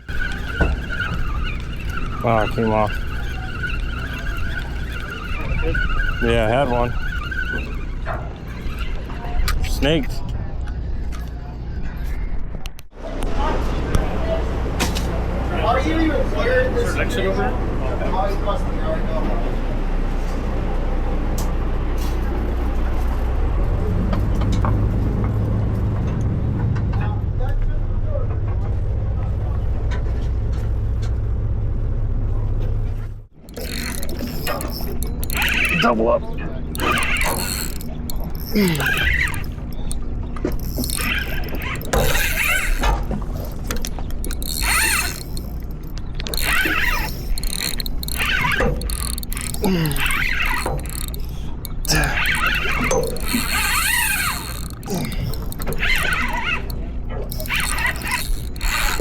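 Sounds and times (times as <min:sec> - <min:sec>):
fishing reel gears whirring: 0:00.0 - 0:11.4, 0:14.0 - 0:19.0, 0:33.3 - 0:59.0
boat engines droning: 0:00.0 - 0:59.0.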